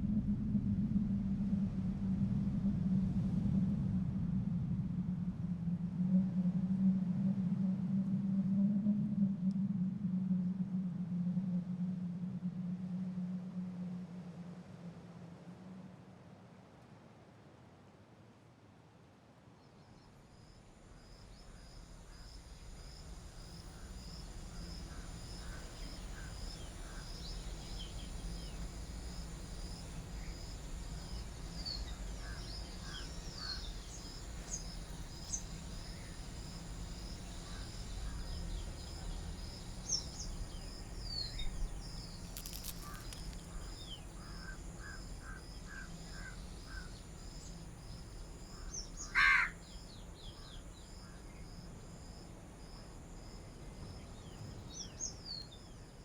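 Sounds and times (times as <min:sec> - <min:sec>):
insect chirping: 0:20.3 - 0:56.0.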